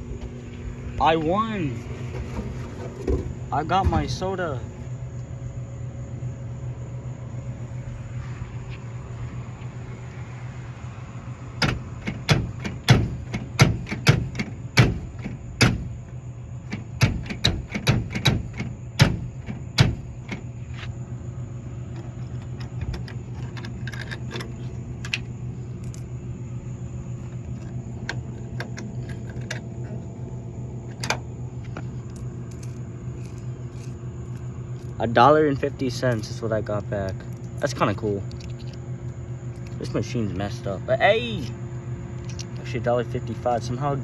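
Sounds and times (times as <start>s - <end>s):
steady low hum: 0.0s - 44.0s
coins clinking: 25.8s - 26.1s, 32.1s - 35.0s.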